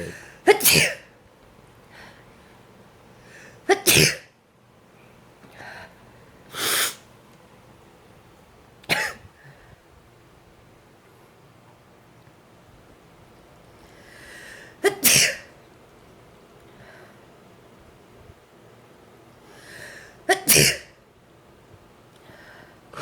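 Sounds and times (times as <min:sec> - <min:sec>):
woman sneezing: 0:00.5 - 0:01.0, 0:20.3 - 0:20.9.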